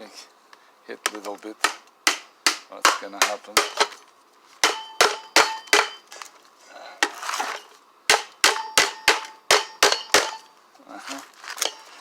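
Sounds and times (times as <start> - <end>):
hammer clanging on metal: 1.1 - 4.0, 4.6 - 6.1, 8.1 - 10.5.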